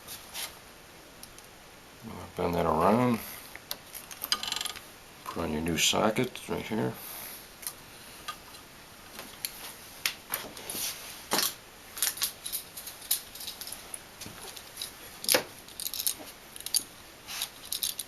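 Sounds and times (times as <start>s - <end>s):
metallic clicks and rattles: 3.7s - 4.8s, 11.4s - 13.8s, 14.4s - 18.0s.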